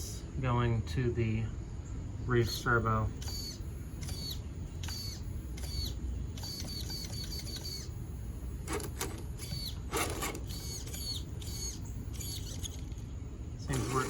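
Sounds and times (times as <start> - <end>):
servo whining: 3.1 - 14.0.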